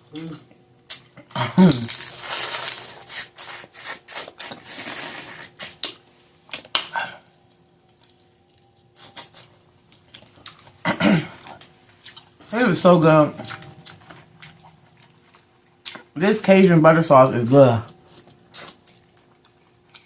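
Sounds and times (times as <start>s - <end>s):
wet chewing and smacking: 7.5s - 10.8s, 11.4s - 12.5s, 13.4s - 16.2s, 18.1s - 20.0s.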